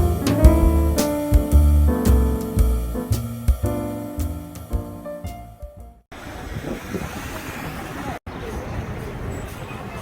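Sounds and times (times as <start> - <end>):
jazzy instrumental music: 0.0 - 6.1.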